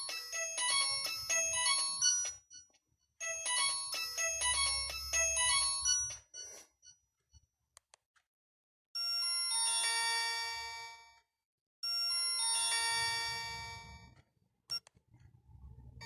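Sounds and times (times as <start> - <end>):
phone ringtone chime melody: 0.0 - 2.6, 3.2 - 6.6, 9.0 - 11.1, 11.8 - 14.8.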